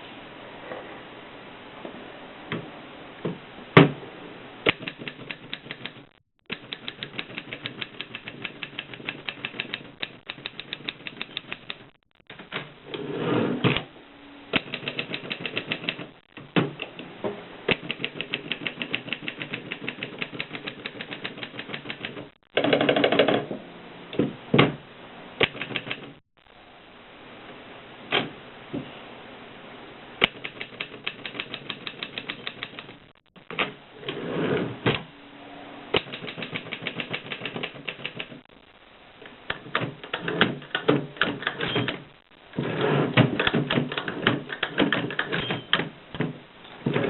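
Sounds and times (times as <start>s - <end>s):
typewriter mechanical noises: 4.7s - 12.7s, 14.5s - 16.9s, 17.7s - 23.5s, 25.4s - 26.2s, 30.2s - 33.8s, 36.0s - 38.4s, 39.5s - 46.3s
typewriter key strikes: 36.0s - 38.3s.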